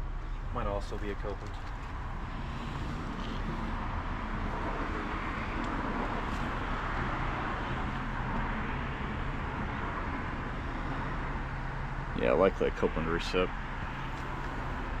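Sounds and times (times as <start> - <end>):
passing cars: 0.0 - 15.0.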